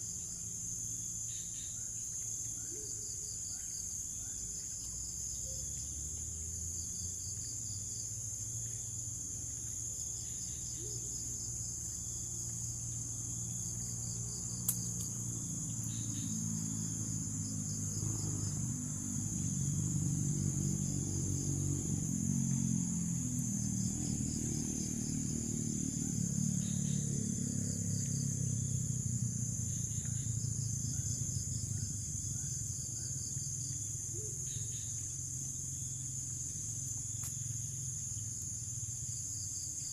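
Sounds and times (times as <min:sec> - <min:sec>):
crickets chirping: 0:00.0 - 0:39.9
insects droning: 0:00.0 - 0:39.9.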